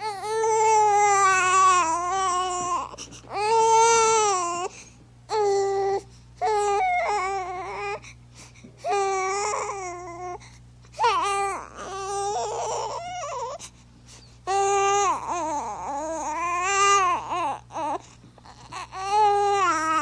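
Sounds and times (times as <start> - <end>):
baby crying: 0.0 - 4.7, 5.3 - 8.0, 11.0 - 13.6, 14.5 - 20.0.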